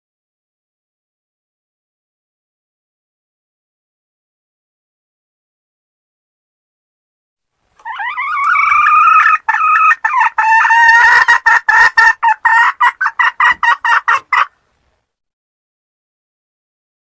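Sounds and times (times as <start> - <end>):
hen cackling and clucking: 7.8 - 14.6.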